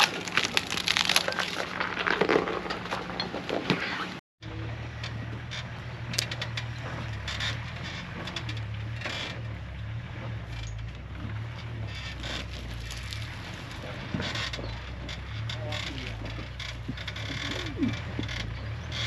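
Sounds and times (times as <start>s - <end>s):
tyres crunching over stones: 0.0s - 4.2s, 11.0s - 19.0s
engine running at low revs: 4.4s - 19.0s.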